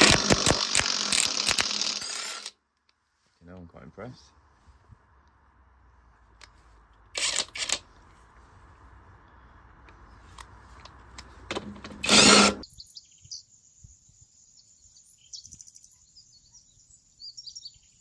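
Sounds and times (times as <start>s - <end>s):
impact wrench burst: 0.0s - 2.5s, 7.2s - 7.9s, 11.6s - 12.6s
high outdoor hiss: 3.2s - 18.0s
birds chirping faintly: 12.6s - 18.0s.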